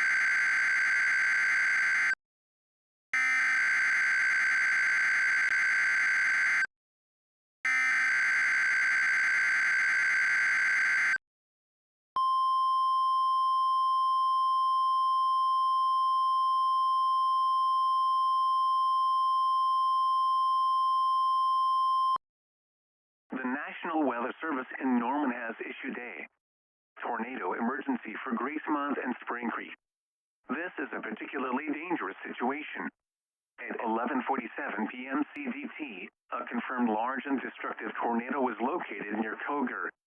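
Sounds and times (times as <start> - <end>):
steady attention alarm tone: 0.0 - 2.2, 3.2 - 6.7, 7.7 - 11.2.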